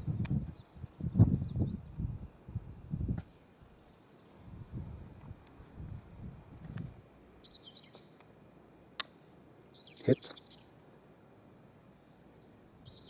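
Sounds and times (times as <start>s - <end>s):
wind on microphone: 0.0s - 3.3s, 4.4s - 7.0s
insects chirring: 0.0s - 13.0s.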